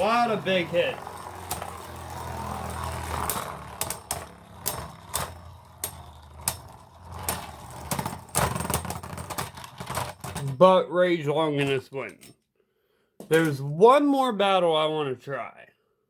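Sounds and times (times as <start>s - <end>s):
spinning tops clacking: 0.0s - 10.5s
spinning tops whirring: 0.0s - 10.5s.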